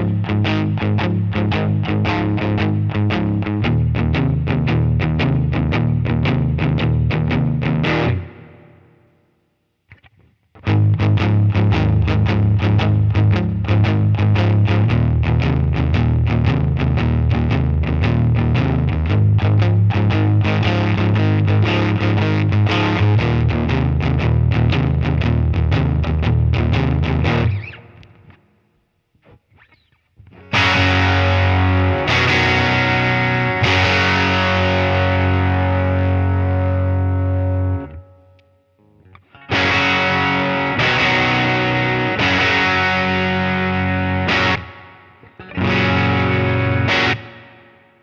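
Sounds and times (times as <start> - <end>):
electric guitar picked phrase: 0.0 - 9.1, 30.3 - 38.4, 39.1 - 47.9
electric guitar chords ringing: 0.0 - 9.3, 10.6 - 28.5, 29.6 - 48.0.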